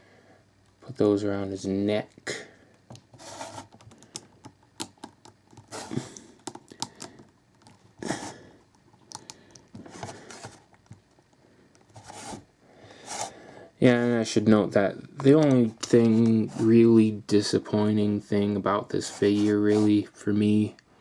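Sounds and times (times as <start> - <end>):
plastic parts clicking and scraping: 2.7 - 12.4.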